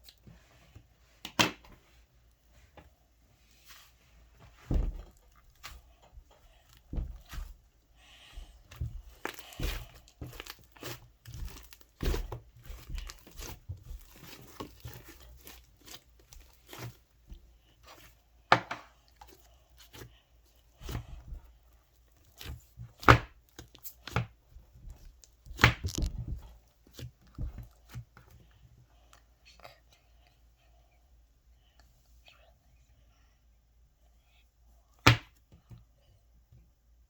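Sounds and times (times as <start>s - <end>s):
slime crackling and popping: 25.2s - 27.0s
slime snapping: 25.5s - 26.1s.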